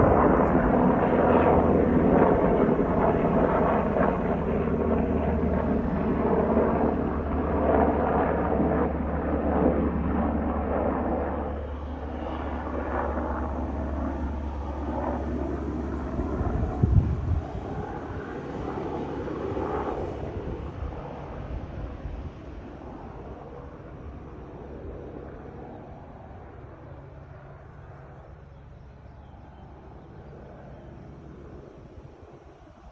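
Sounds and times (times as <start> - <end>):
helicopter engine and rotor drone: 0.0 - 32.9.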